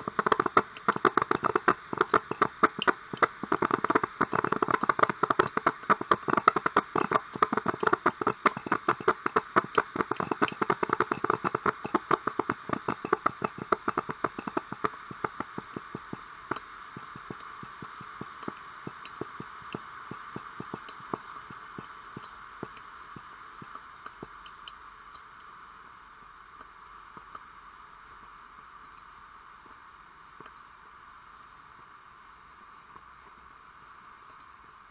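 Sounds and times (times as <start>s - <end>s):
coffee machine hiss: 0.0s - 24.4s
coffee machine spitting and popping: 0.0s - 24.7s.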